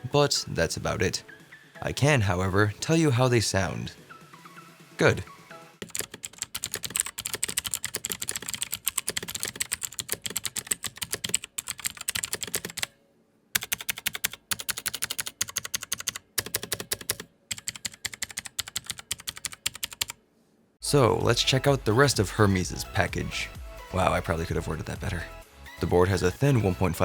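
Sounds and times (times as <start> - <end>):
clicky mechanical keyboard typing: 5.8 - 12.9, 13.6 - 20.2.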